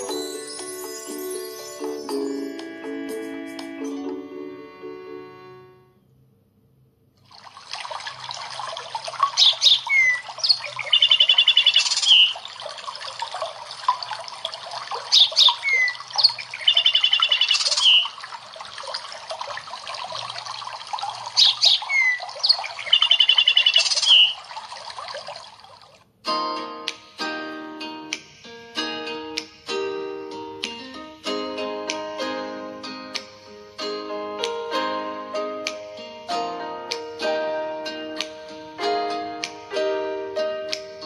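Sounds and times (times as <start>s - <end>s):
rushing water: 7.2s - 26.0s
birdsong chirps and trill: 9.1s - 13.4s, 14.6s - 19.6s, 20.2s - 25.1s.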